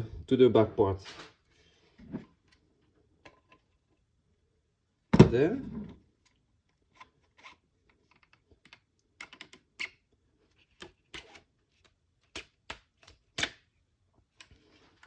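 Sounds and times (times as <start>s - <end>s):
plastic parts clicking and knocking: 7.0s - 10.0s.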